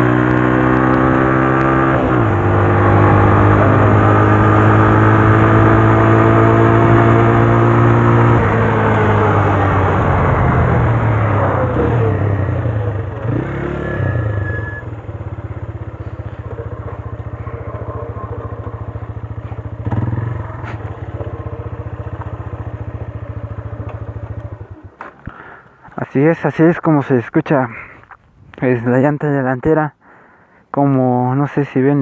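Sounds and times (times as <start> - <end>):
motorcycle engine idling: 13.9 - 25.8.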